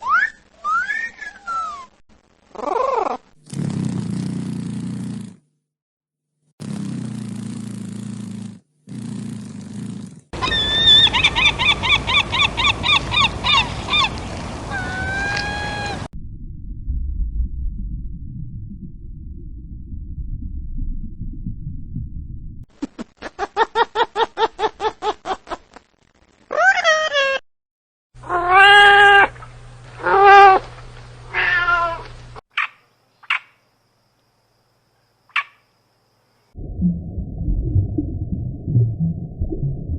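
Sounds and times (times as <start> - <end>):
animal giving wavering calls: 10.4 - 16.1
low steady hum: 11.0 - 22.7, 36.5 - 39.9
cat meowing: 31.3 - 32.1.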